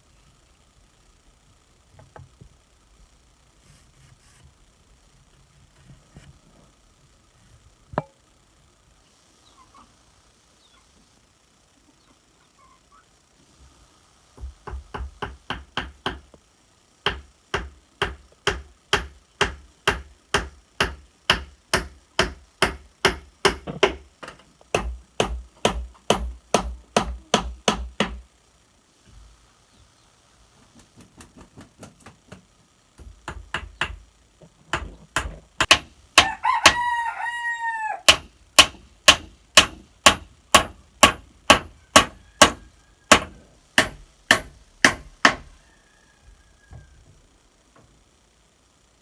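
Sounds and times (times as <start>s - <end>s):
chopping or hammering strikes: 14.4s - 16.2s, 17.1s - 28.2s, 34.8s - 36.8s, 38.1s - 45.5s.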